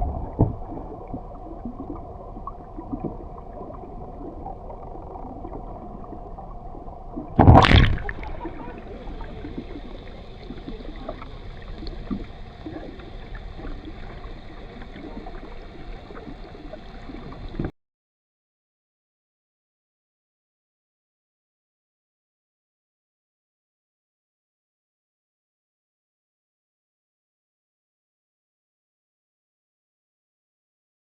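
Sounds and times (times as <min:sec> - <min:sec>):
muffled water gurgling: 0:00.0 - 0:17.7
water splash: 0:07.4 - 0:15.0.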